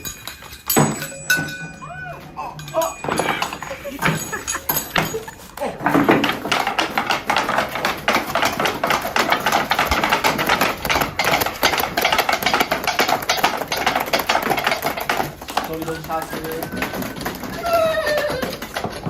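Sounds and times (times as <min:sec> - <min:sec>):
rapid dense clicking and tapping: 0:03.0 - 0:19.0.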